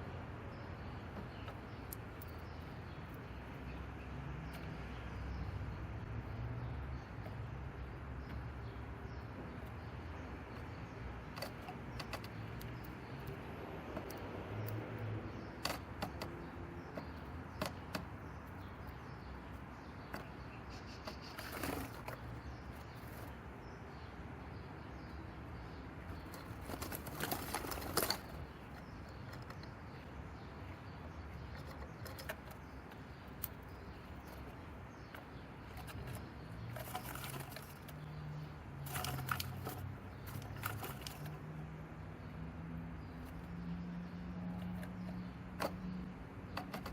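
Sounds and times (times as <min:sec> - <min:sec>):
light taps of birds: 0:00.1 - 0:46.9.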